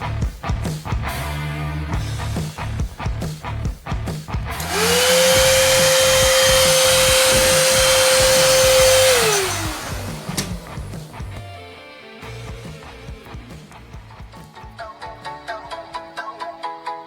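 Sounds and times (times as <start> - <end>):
vacuum cleaner motor whining: 4.6 - 11.3.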